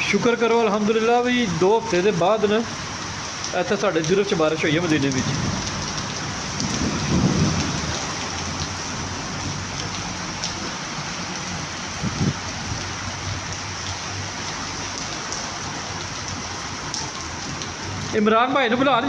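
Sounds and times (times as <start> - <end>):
rain pattering: 0.0 - 19.0.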